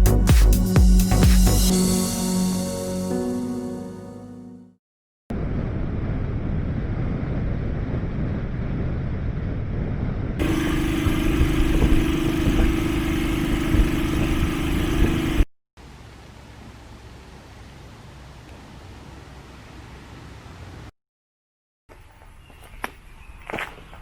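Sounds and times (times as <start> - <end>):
wind rumble: 5.3 - 15.4
motorcycle engine running: 10.4 - 15.5
steady humming tone: 10.4 - 15.5.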